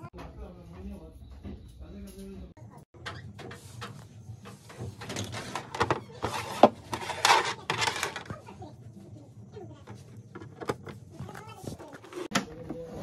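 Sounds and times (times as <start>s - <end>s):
hard objects knocking and clattering: 3.0s - 8.4s, 9.8s - 12.3s.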